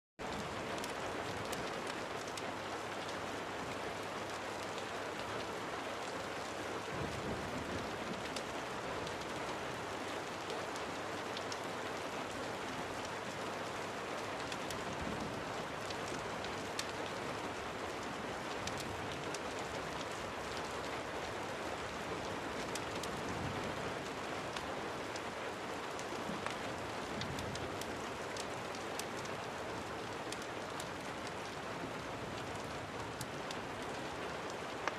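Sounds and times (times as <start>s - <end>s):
steady rain: 0.2s - 34.9s
fire crackling and popping: 0.3s - 2.4s, 11.4s - 11.6s, 14.3s - 31.6s, 32.2s - 34.9s.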